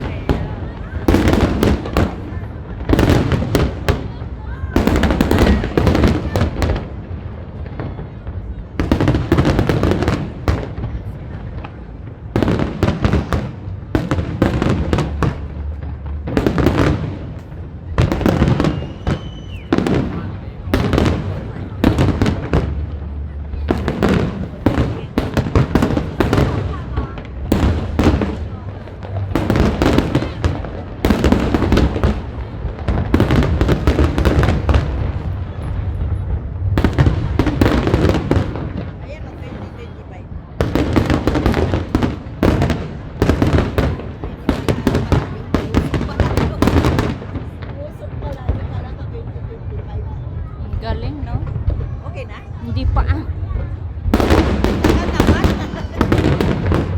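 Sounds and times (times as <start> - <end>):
fireworks bangs and crackling: 0.0 - 56.9
firework whistle: 18.4 - 19.9.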